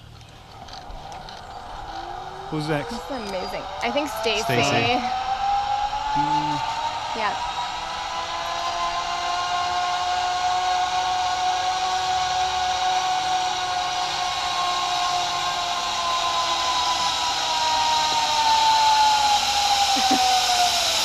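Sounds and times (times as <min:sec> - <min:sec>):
zip line pulleys whirring: 0:00.0 - 0:21.0
hiss: 0:06.0 - 0:21.0.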